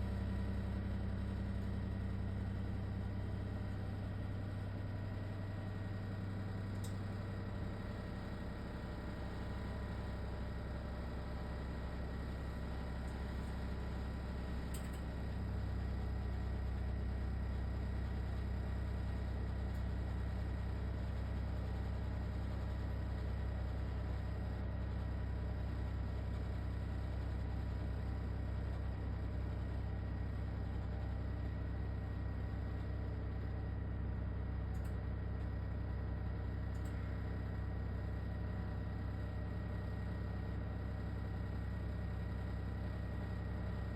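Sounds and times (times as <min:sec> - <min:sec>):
oven low drone: 0:00.0 - 0:17.6.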